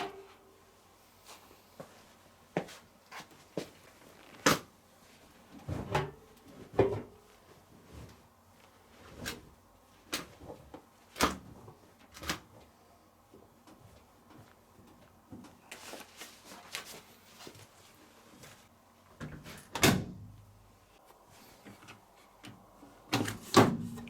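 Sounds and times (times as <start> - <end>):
washing machine door clicks and knocks: 23.2 - 24.0.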